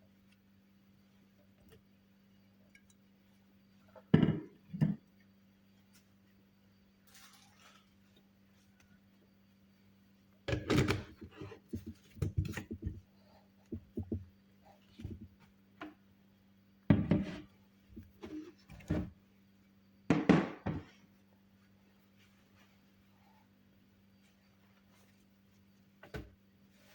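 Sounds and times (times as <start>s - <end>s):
kitchen items knocking and clunking: 4.0s - 5.1s, 10.5s - 13.0s, 16.9s - 17.4s, 20.1s - 20.9s.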